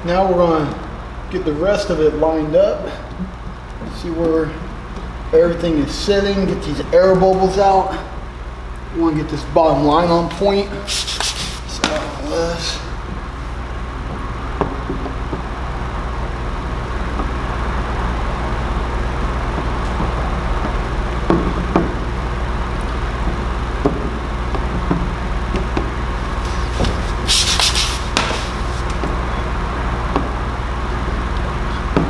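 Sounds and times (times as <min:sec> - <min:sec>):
steady low hum: 0:00.0 - 0:32.0
squeegee rubbing on wet film: 0:10.2 - 0:12.9, 0:26.0 - 0:29.2
short hiss: 0:10.9 - 0:12.3, 0:26.2 - 0:29.0.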